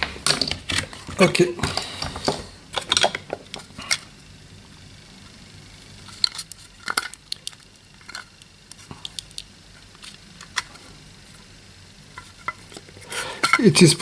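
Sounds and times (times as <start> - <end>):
small metal parts and tools clicking: 0.0 - 4.1, 6.0 - 10.8, 12.1 - 14.0.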